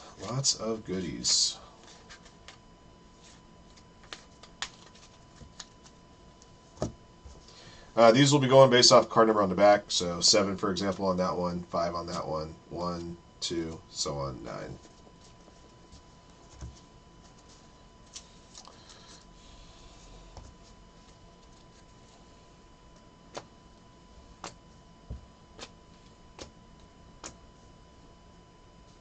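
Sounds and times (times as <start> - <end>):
faint electrical whine: 0.0 - 29.0
cards clicking and tapping: 4.0 - 5.8.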